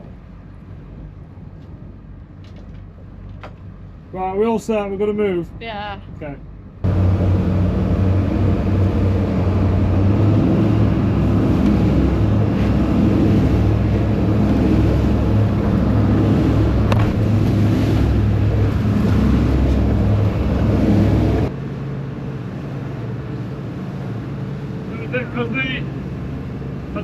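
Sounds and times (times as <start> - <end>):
motorboat engine droning: 0.0 - 27.0
broad rushing noise: 6.8 - 27.0.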